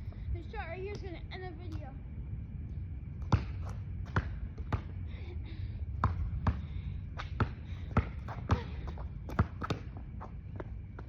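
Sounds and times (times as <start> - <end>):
steady low rumble: 0.0 - 11.0
basketball bouncing on hard court: 3.2 - 5.0, 6.0 - 10.0.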